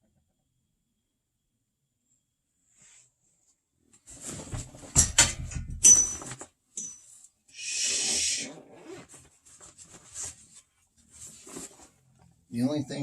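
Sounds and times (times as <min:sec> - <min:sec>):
ringing clink: 0:05.8 - 0:07.1.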